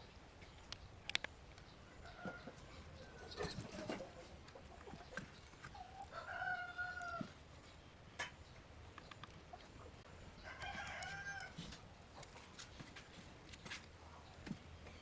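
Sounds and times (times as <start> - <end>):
rooster crowing: 6.0 - 7.3, 10.4 - 11.7.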